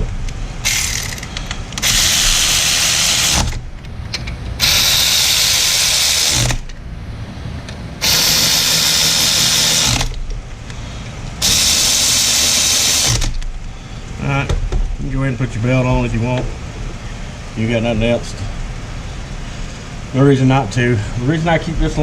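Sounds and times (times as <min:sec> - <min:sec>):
power tool bursts: 0:00.6 - 0:03.6, 0:04.6 - 0:06.7, 0:08.0 - 0:10.2, 0:11.4 - 0:13.5.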